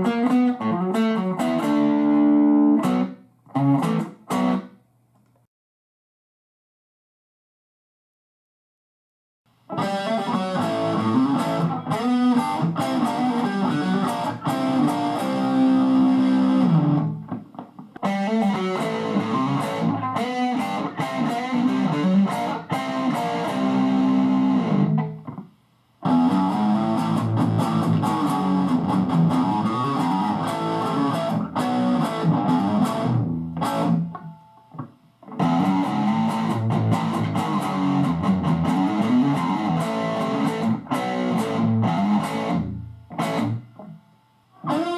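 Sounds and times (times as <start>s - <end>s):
electric guitar playing: 0.0s - 4.8s, 9.7s - 44.9s.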